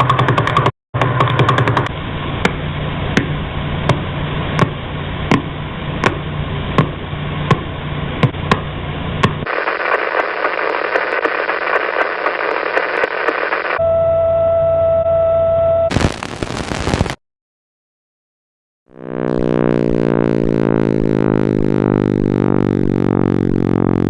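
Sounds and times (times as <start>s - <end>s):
low hum: 1.9s - 17.0s, 18.9s - 24.0s
radio static hiss: 9.4s - 13.8s, 15.9s - 17.2s
steady tone: 18.9s - 24.0s.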